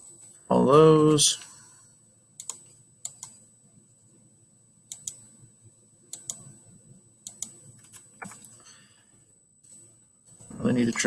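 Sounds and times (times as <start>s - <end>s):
mouse buttons clicking: 4.9s - 5.2s, 6.1s - 6.4s, 7.3s - 7.6s.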